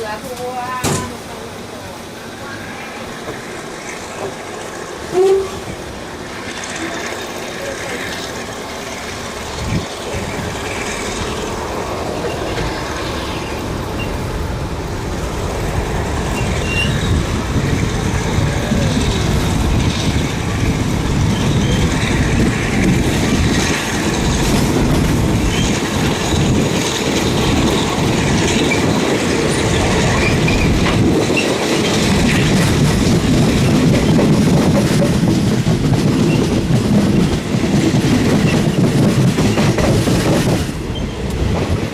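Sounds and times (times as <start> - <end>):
train wheels rumbling on rails: 0.0 - 41.9
wheels clattering over rail joints: 16.0 - 41.9.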